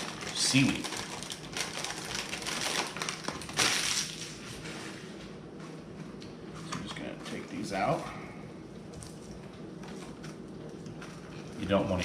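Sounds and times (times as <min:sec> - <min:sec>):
plastic wrapper crinkling: 0:00.0 - 0:04.4.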